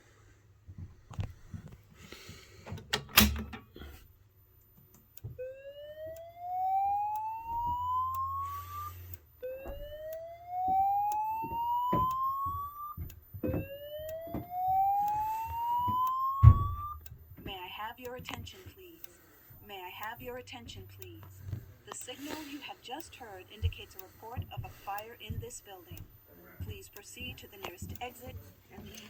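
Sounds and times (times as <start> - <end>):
clicks: 4.7 - 26.0
fire alarm whoop tone: 5.3 - 17.4.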